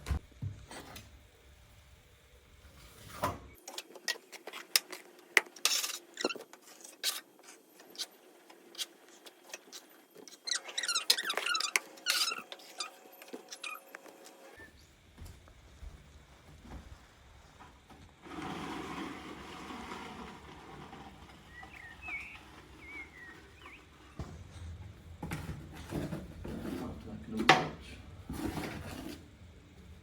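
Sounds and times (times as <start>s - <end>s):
squeaky trowel strokes: 5.6s - 14.7s, 18.3s - 24.2s
plastering trowel scraping: 16.7s - 24.2s.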